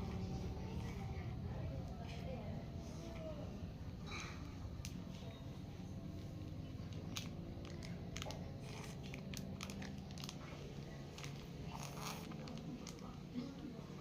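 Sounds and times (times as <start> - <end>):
chewing crunchy jelly: 7.0 - 13.2.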